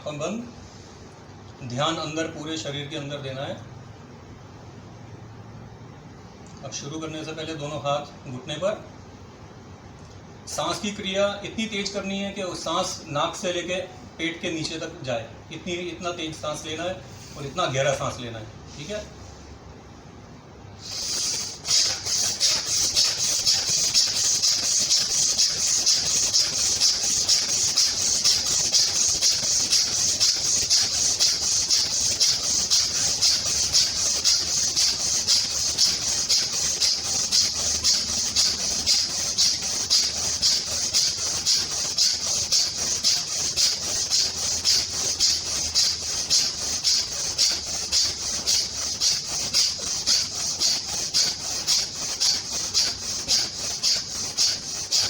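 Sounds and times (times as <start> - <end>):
man breathing forcefully through nose: 20.8 - 55.0.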